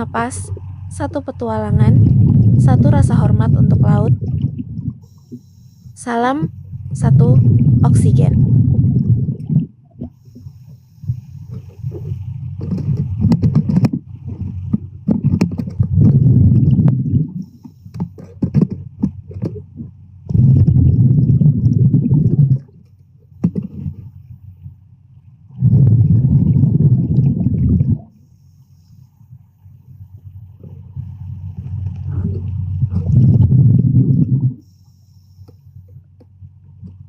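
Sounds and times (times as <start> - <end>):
underwater breathing bubbles: 6.8 - 13.4, 19.8 - 22.7, 25.5 - 29.0, 30.6 - 35.6.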